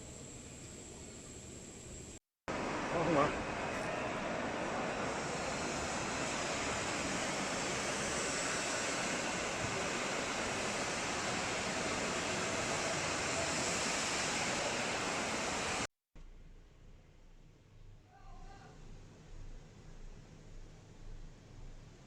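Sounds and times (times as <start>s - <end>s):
steady rushing noise: 2.5s - 15.9s.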